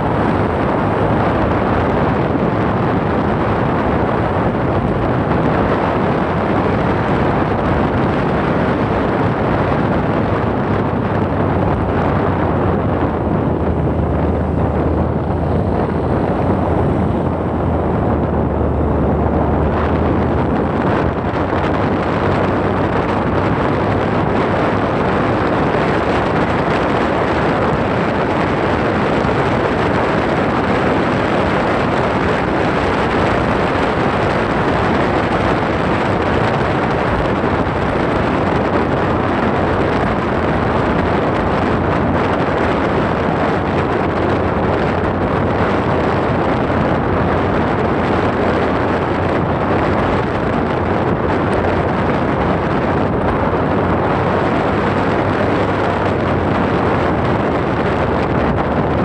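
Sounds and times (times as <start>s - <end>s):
loud steady rushing noise: 0.0s - 59.0s.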